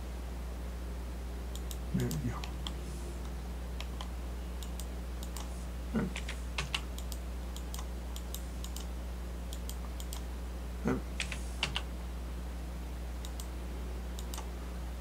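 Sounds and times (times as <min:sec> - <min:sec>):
steady low hum: 0:00.0 - 0:15.0
keyboard keys clicking: 0:06.1 - 0:08.9, 0:11.2 - 0:11.9.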